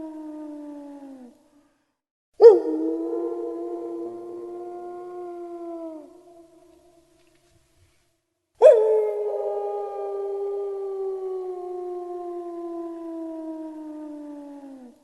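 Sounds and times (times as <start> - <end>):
wolf howling: 2.4 - 6.9, 8.6 - 15.0.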